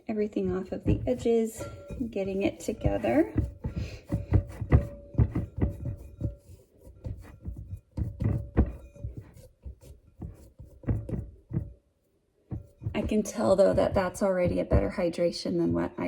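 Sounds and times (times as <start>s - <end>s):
hands squishing wet dough: 0.1s - 11.7s.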